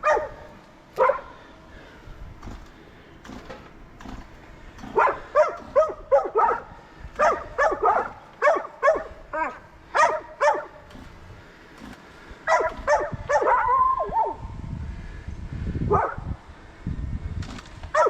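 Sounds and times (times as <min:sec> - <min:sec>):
dog barking: 0:00.0 - 0:01.4, 0:04.9 - 0:10.8, 0:12.4 - 0:14.4, 0:15.9 - 0:16.3.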